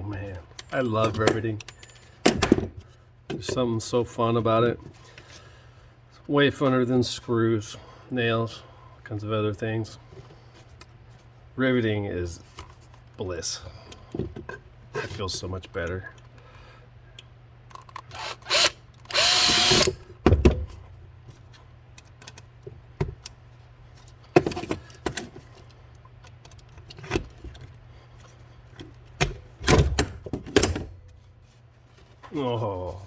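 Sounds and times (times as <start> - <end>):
power drill drilling: 18.2 - 19.9.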